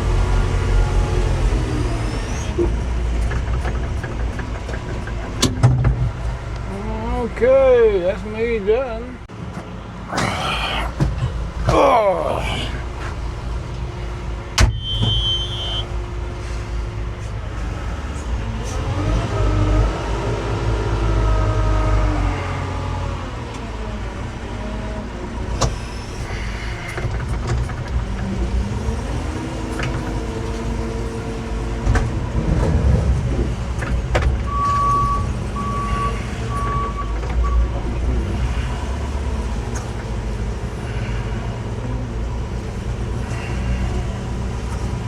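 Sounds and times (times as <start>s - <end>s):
heavy vehicle engine revving: 0.0s - 45.0s
warning beeps: 14.7s - 15.9s.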